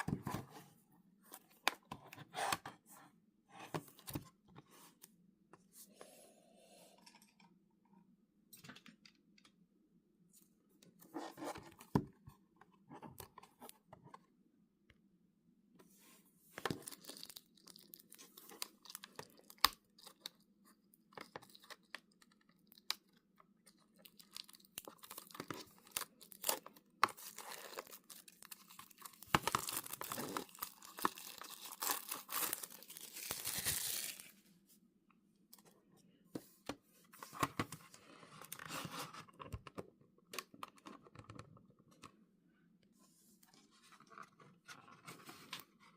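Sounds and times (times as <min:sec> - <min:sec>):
packaging tearing and crinkling: 0:24.0 - 0:34.3.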